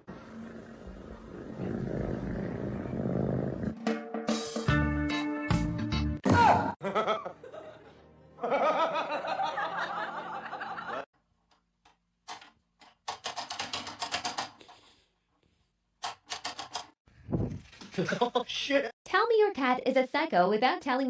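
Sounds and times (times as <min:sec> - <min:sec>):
music: 0:03.7 - 0:08.8
person laughing: 0:17.9 - 0:18.6.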